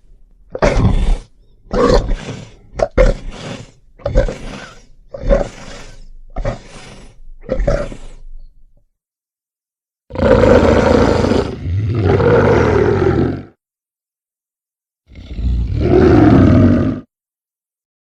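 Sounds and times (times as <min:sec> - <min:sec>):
monster roaring: 0:10.1 - 0:13.5, 0:15.1 - 0:17.1.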